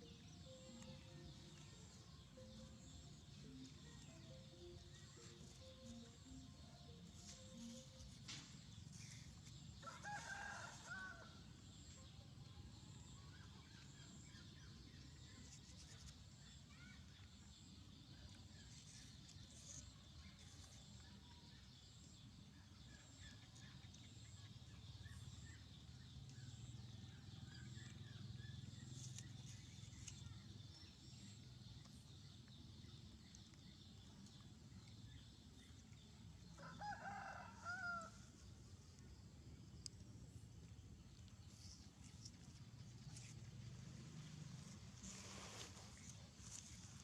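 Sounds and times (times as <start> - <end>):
outdoor background noise: 0.0 - 47.0
distant rooster crowing: 36.6 - 38.2.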